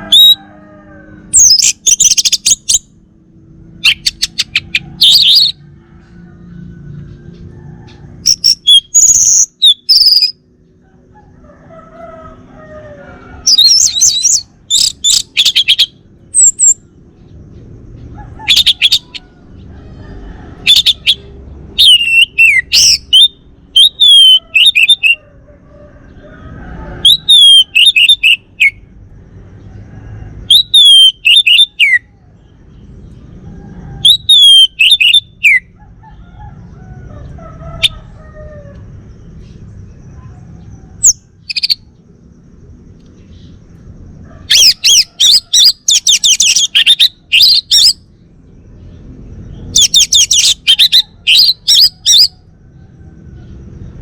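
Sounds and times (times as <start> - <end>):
thrush whistling song: 1.3 - 3.0, 3.8 - 5.6, 8.2 - 10.5, 13.4 - 16.8, 20.6 - 25.2, 27.0 - 28.9, 30.5 - 32.1, 34.0 - 35.8, 44.5 - 48.0, 49.5 - 52.4.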